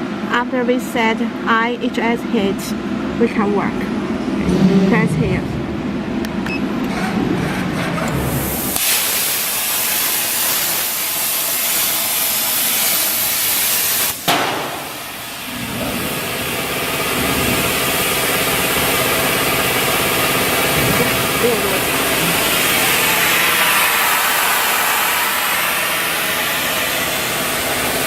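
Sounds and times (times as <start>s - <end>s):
plasma torch arc hissing: 8.4s - 15.5s.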